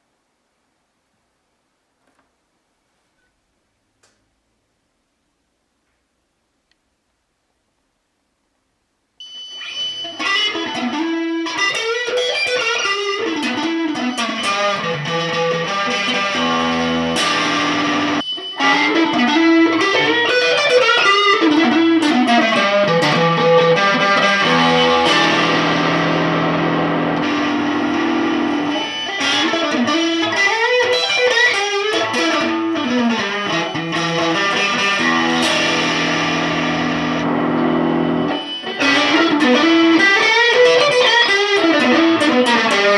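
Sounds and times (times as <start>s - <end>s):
electric guitar playing: 9.6s - 42.9s.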